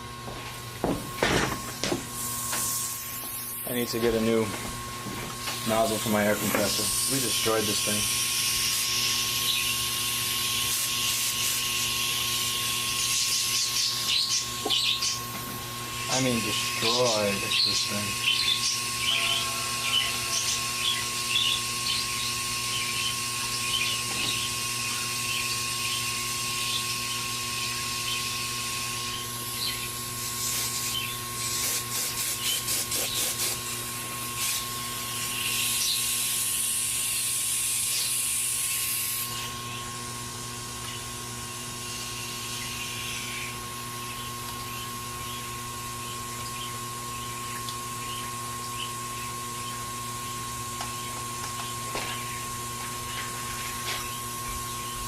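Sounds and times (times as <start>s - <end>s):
compressed air bursts: 10.6s - 11.9s, 30.3s - 34.7s.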